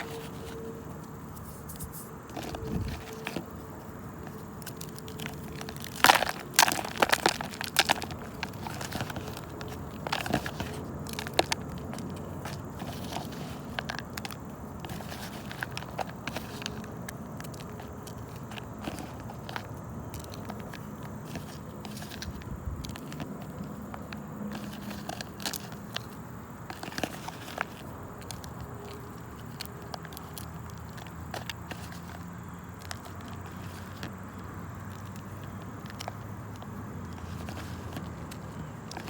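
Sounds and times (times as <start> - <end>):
gritty material crushed by hand: 0.0 - 39.0.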